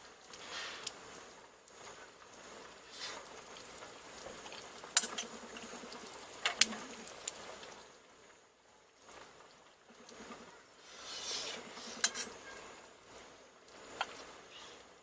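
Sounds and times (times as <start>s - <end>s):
camp stove hissing: 2.9s - 7.8s.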